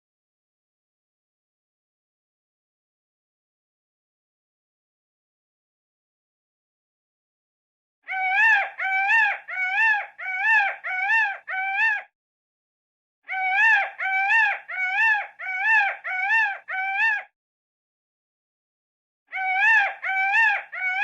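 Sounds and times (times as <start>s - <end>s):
peacock wailing calls: 8.1s - 12.0s, 13.3s - 17.3s, 19.4s - 21.0s.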